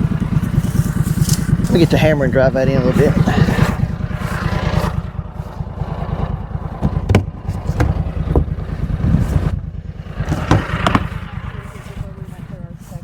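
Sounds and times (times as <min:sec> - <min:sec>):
engine idling: 0:00.0 - 0:13.0
hammer knocking: 0:06.8 - 0:08.6, 0:10.2 - 0:11.1.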